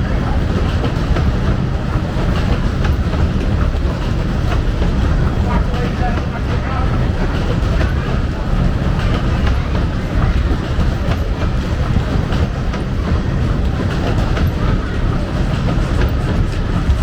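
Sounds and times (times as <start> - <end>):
fairground ride rumbling: 0.0 - 17.0.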